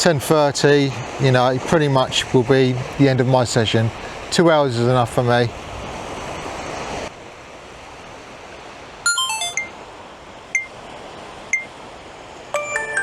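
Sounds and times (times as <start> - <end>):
surf: 0.0 - 7.1
wind: 0.0 - 13.0.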